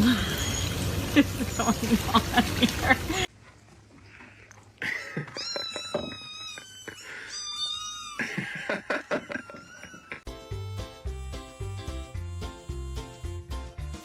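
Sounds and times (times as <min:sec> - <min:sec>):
cat meowing: 0:05.3 - 0:08.2
music: 0:10.3 - 0:14.0.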